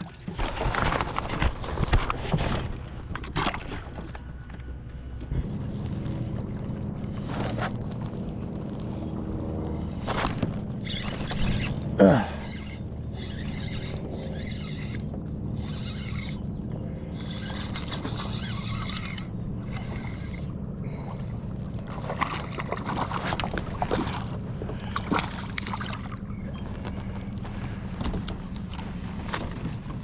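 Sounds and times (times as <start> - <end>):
gear clicking and rattling: 0.0 - 30.0
low hum: 0.0 - 30.0
water sloshing around kayak: 0.0 - 30.0.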